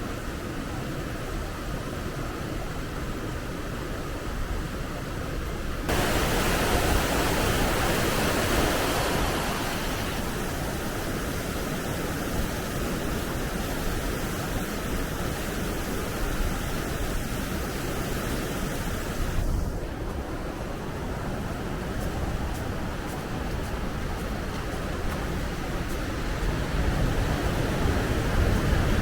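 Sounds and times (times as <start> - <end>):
water flowing: 5.9 - 19.6.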